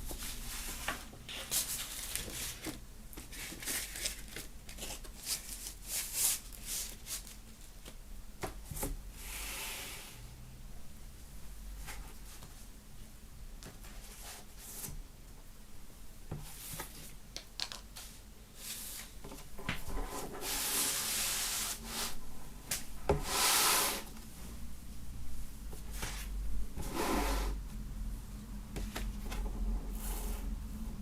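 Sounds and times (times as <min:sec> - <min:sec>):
paper sleeves sliding and rubbing: 0:20.1 - 0:22.2.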